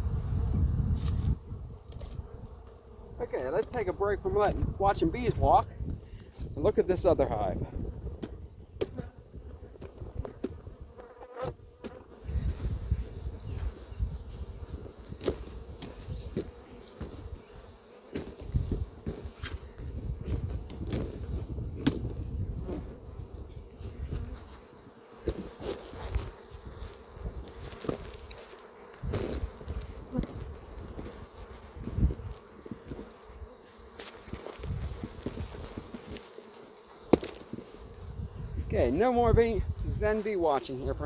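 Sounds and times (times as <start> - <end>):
bees buzzing: 0.0 - 41.0.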